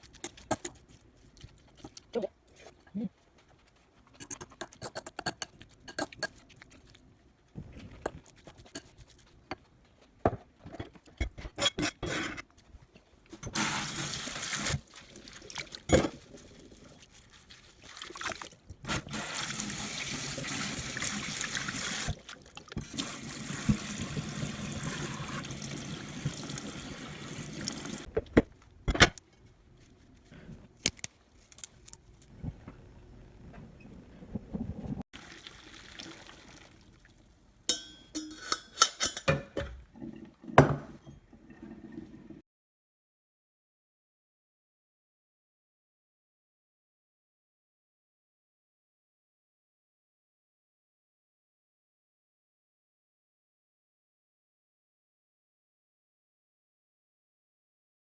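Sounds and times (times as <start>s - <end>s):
running water: 13.6s - 28.1s
kitchenware clicks and knocks: 37.8s - 39.8s.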